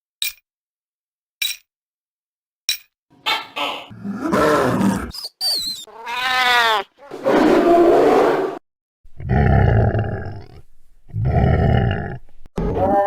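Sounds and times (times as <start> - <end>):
deep rough monster roars: 3.9 - 5.1, 9.2 - 12.2
monster howl: 3.9 - 5.1.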